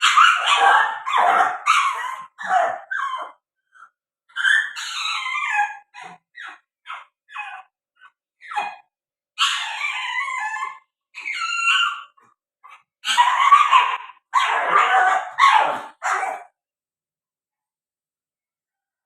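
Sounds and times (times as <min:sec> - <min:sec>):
dog barking: 0:00.0 - 0:03.4, 0:13.0 - 0:16.6
dog whining: 0:00.0 - 0:16.0.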